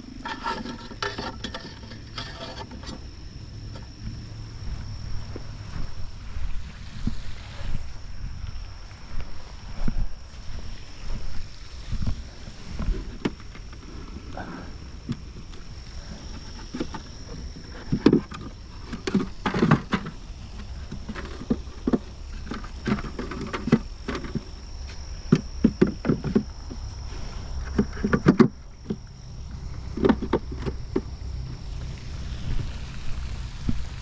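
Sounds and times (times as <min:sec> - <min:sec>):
wind rumble on microphone: 0:00.0 - 0:34.0
wooden knocks of hive boxes: 0:17.8 - 0:24.6, 0:25.3 - 0:26.9, 0:27.7 - 0:29.0, 0:29.8 - 0:31.2.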